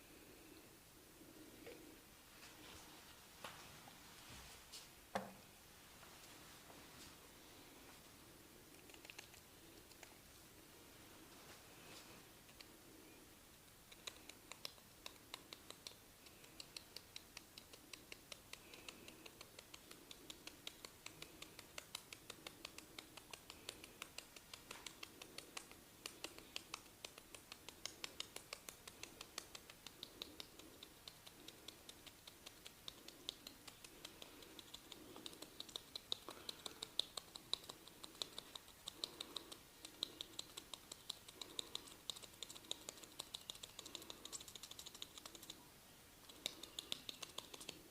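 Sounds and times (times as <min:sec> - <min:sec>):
fingers scratching through hair: 0:13.8 - 0:47.9.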